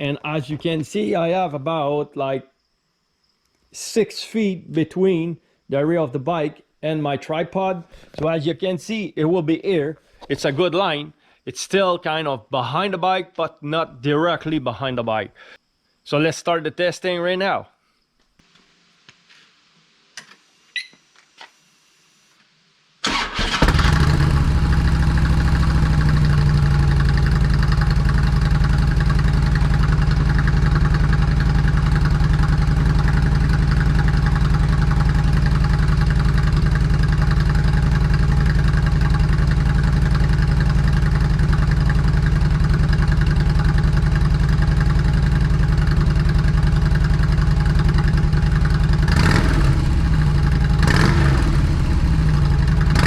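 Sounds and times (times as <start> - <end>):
motorcycle engine starting and idling: 23.0 - 53.0.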